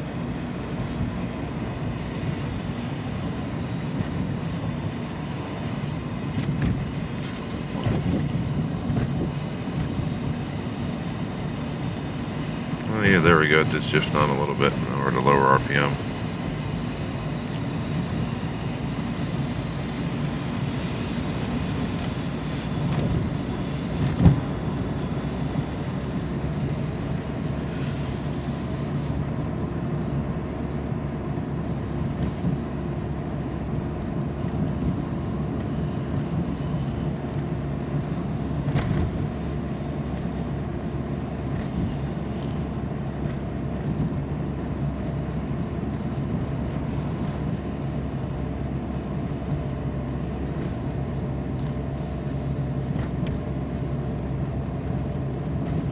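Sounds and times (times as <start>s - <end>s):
car engine and tyres humming: 0.0s - 55.9s.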